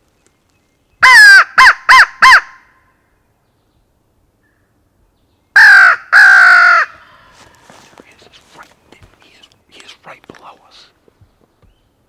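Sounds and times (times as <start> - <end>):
crow call cawing: 5.6 - 7.9.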